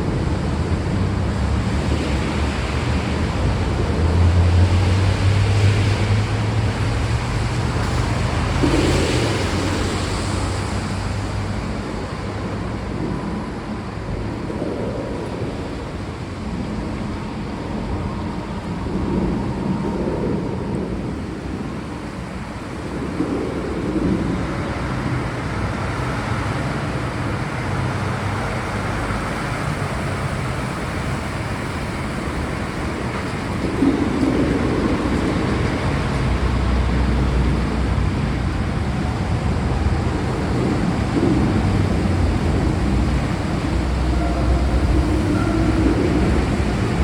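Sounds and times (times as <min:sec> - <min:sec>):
rolling thunder rumble: 0:00.0 - 0:47.0
steady rain: 0:00.0 - 0:47.0.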